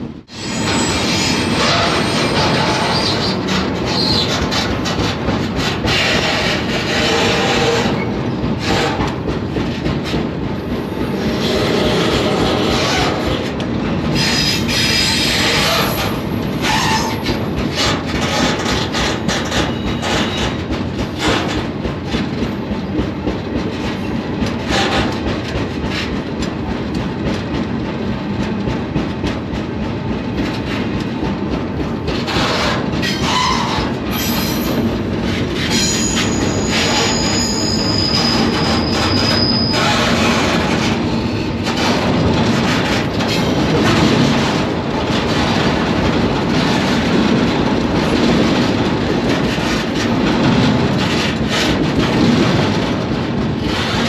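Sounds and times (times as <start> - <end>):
freight train rumble: 0.0 - 54.0
train wheel squeal: 0.3 - 9.2, 9.8 - 21.7, 23.8 - 26.2, 32.1 - 44.6.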